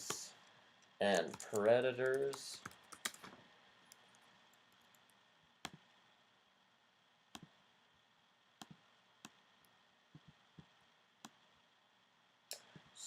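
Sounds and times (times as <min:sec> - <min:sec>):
computer keyboard and mouse clicks: 0:01.1 - 0:05.0.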